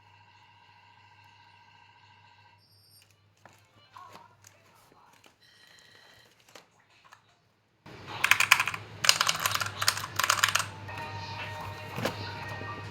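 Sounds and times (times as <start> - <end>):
mechanical keyboard typing: 8.1 - 10.8.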